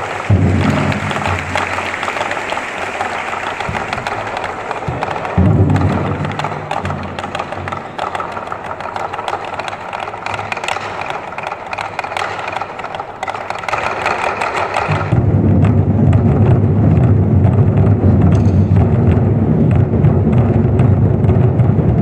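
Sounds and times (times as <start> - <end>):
big drums low rumble: 0.0 - 2.7, 3.6 - 7.7, 15.1 - 22.0
fast drumming: 0.0 - 22.0.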